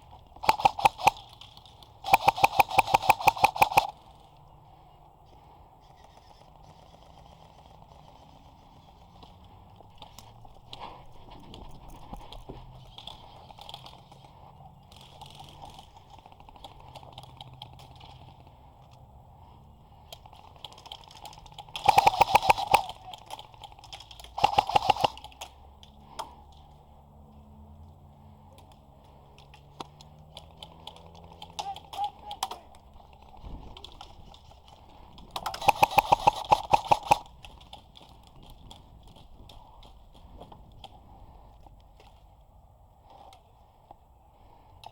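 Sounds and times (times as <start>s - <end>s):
airsoft gun firing bursts: 0.2s - 4.3s, 20.5s - 25.6s, 30.5s - 39.6s.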